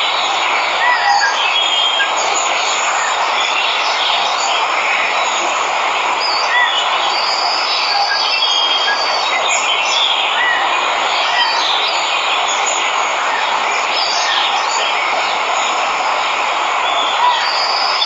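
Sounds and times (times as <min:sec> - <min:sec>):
waterfall rushing: 0:00.0 - 0:18.0
birds chirping and whistling: 0:06.2 - 0:14.9, 0:16.8 - 0:18.0.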